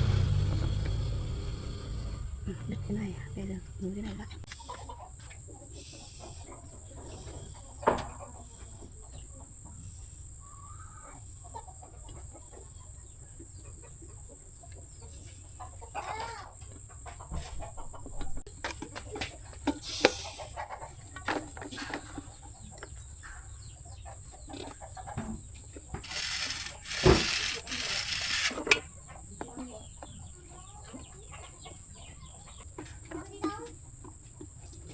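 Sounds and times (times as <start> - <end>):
clicks and knocks of hand work: 26.0 - 28.9.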